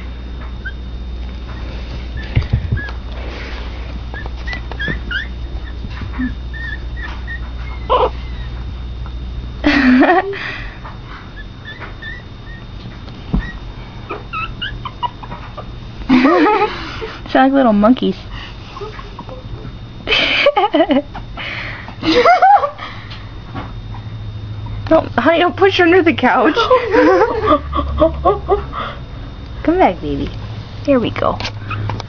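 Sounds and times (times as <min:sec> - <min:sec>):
puppy crying: 0:01.5 - 0:03.0, 0:04.1 - 0:08.7, 0:11.3 - 0:17.0, 0:18.7 - 0:19.7
puppies squeaking and whimpering: 0:01.5 - 0:03.1, 0:04.1 - 0:08.7, 0:11.2 - 0:15.7, 0:18.6 - 0:19.7, 0:31.6 - 0:31.9.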